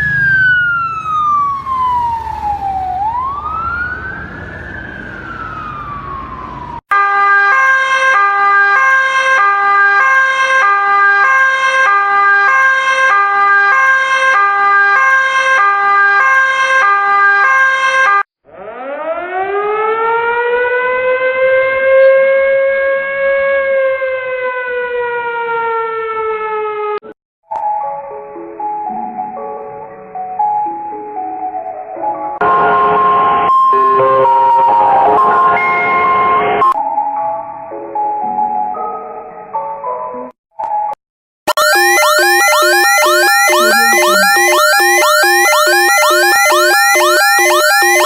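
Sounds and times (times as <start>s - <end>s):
siren gliding in pitch: 0.0s - 26.9s, 32.4s - 36.8s, 41.5s - 48.0s
two-note electronic alarm: 32.4s - 36.8s, 41.5s - 48.0s
siren winding up: 41.5s - 48.0s
steady high tone: 41.5s - 48.0s.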